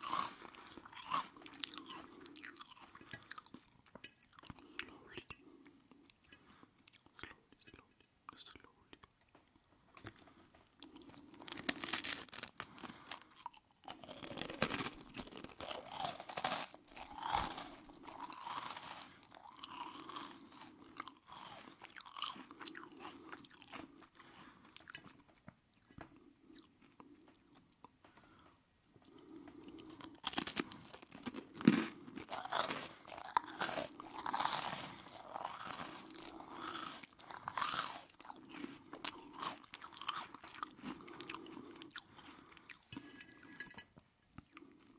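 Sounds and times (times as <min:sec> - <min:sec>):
close chewing: 0:00.0 - 0:07.8, 0:09.1 - 0:44.9.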